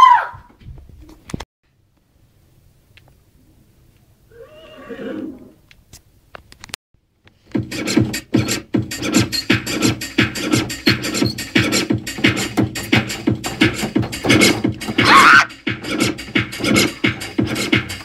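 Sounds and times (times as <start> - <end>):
music with fast beat: 7.5 - 18.0.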